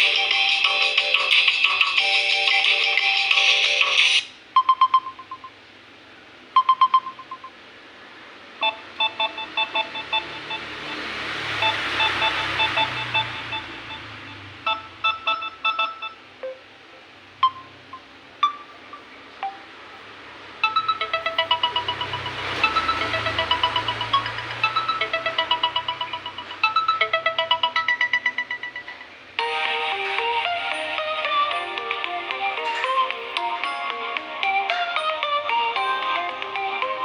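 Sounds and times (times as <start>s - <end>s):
busy dense ringtone: 0.0s - 5.7s, 6.6s - 7.6s, 8.6s - 37.0s
electronic ringtone chime notes: 6.6s - 7.6s, 8.6s - 16.7s, 17.4s - 19.7s, 20.6s - 34.1s.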